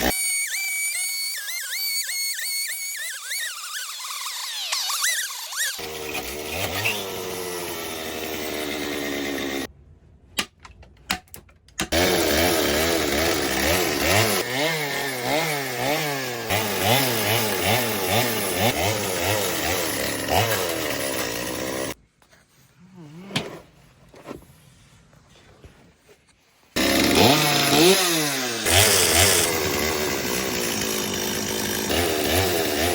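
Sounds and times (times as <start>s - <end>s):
chainsaw cutting wood: 0.0s - 9.7s, 11.8s - 22.0s, 26.8s - 32.9s.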